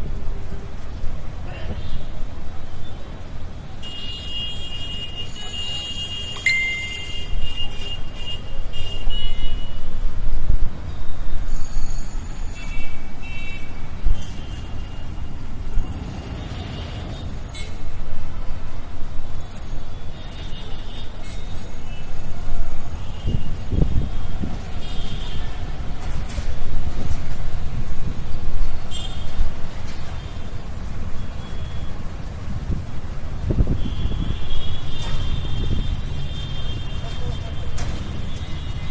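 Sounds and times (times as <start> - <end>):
traffic engines and tyres rumbling: 0.0 - 38.9
vehicle horns honking: 3.8 - 9.8, 33.7 - 38.9.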